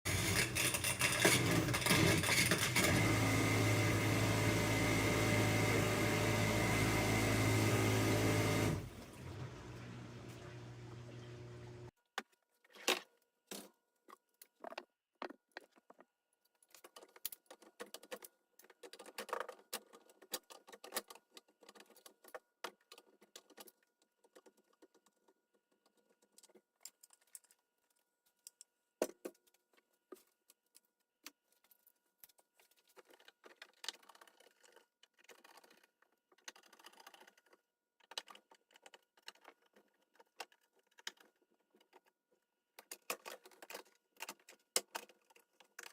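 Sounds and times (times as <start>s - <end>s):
hard parts clinking and rattling: 0.1s - 3.1s.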